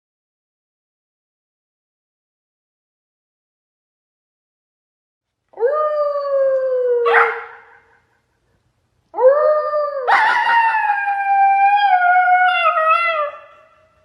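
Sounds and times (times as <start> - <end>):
dog howling: 5.6 - 7.8, 9.2 - 13.7.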